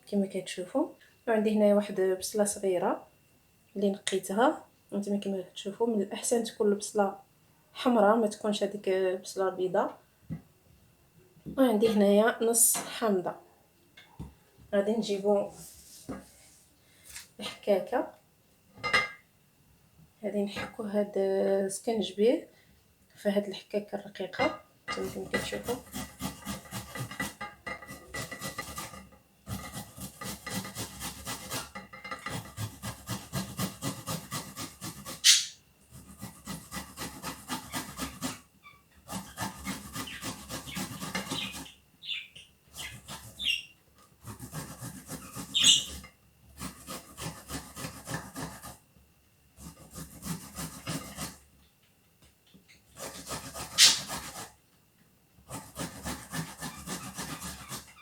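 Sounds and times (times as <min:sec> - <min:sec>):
ginger grated on a grater: 0:25.0 - 0:41.7, 0:42.7 - 0:43.5, 0:44.2 - 0:48.8, 0:49.6 - 0:51.4, 0:52.9 - 0:54.6, 0:55.5 - 0:58.0.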